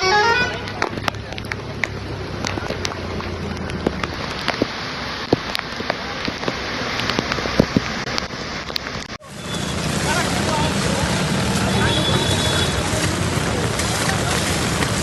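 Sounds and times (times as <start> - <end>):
heavy rain falling: 0.0 - 15.0
sharp raindrops hitting nearby: 0.0 - 15.0.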